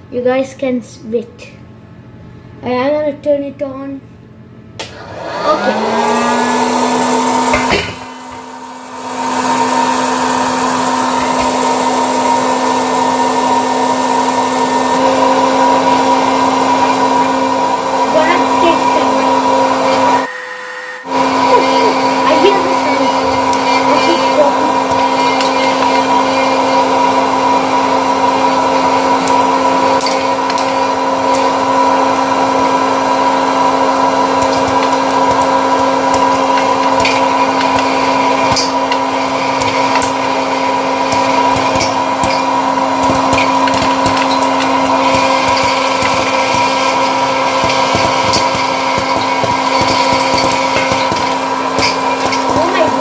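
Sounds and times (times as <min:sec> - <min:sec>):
popcorn machine fan humming: 0:00.0 - 0:53.0
popcorn kernels popping: 0:23.2 - 0:53.0.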